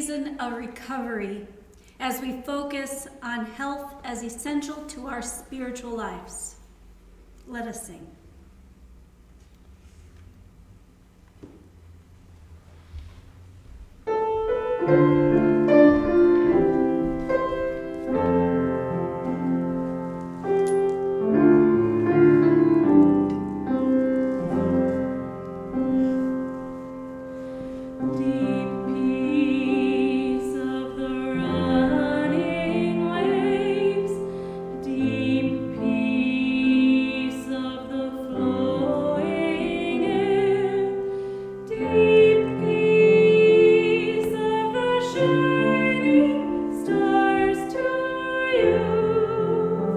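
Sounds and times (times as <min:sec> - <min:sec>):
piano chords: 0:13.4 - 0:49.9
person singing with vibrato: 0:27.9 - 0:49.9.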